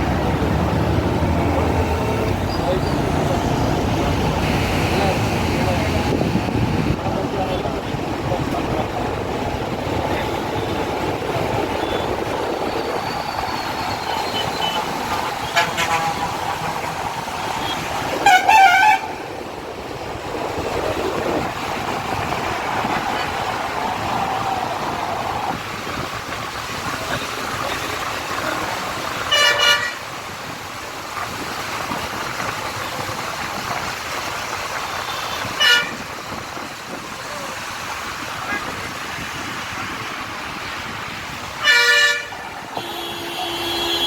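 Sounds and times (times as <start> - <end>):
road traffic: 0.0 - 44.0
vehicle horns honking: 13.1 - 16.8, 17.4 - 19.2, 29.2 - 30.1, 35.0 - 36.1, 41.6 - 44.0.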